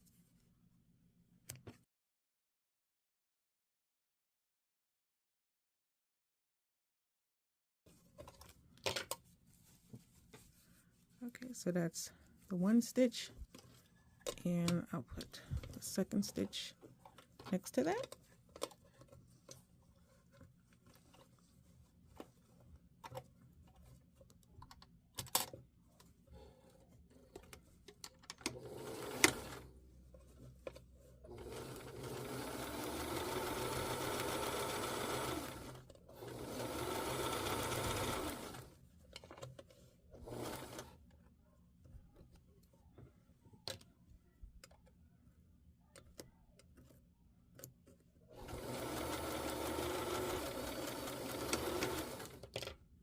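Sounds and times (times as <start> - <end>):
sewing machine stitching: 28.4 - 29.7, 31.2 - 38.8, 40.2 - 41.0, 48.3 - 52.6.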